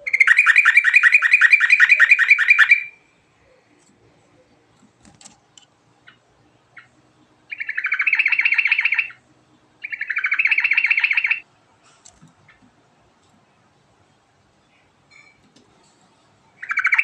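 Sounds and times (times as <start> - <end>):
bird trilling: 0.0 - 3.0, 6.8 - 9.2, 9.8 - 11.4, 16.6 - 17.0
bird chirps: 0.0 - 3.6, 6.0 - 9.2, 9.8 - 11.4, 16.6 - 17.0.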